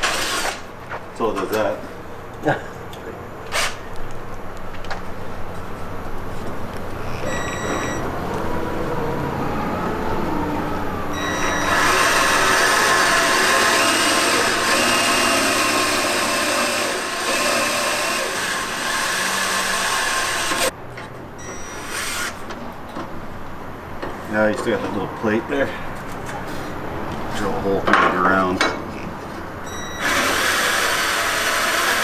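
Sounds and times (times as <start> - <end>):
electric drill cutting steel: 0.0 - 0.7, 3.5 - 3.8, 7.2 - 8.1, 11.1 - 20.7, 21.6 - 22.4, 29.9 - 32.0.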